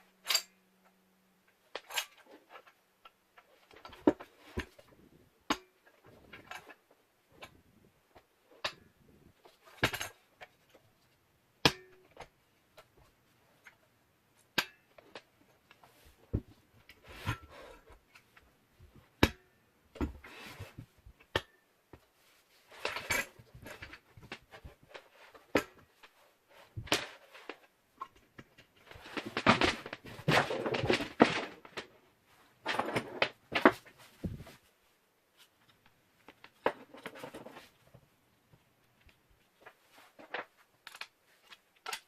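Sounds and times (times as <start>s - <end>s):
scraping and rustling: 22.1s - 38.0s.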